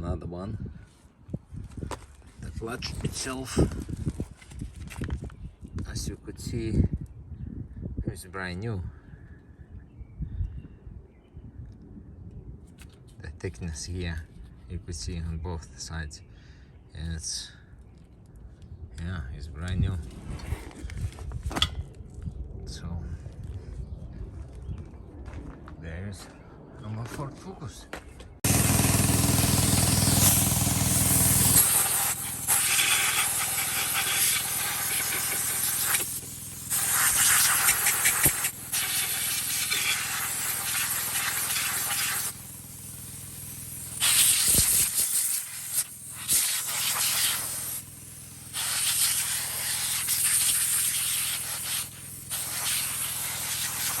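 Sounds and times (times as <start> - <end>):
loud hissing: 28.5 - 54.0.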